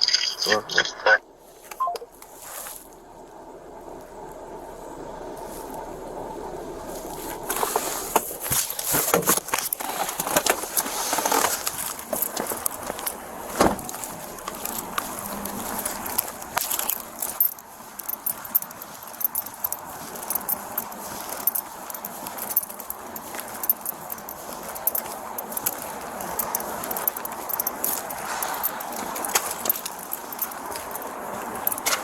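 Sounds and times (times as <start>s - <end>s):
keys jangling: 13.8s - 32.0s.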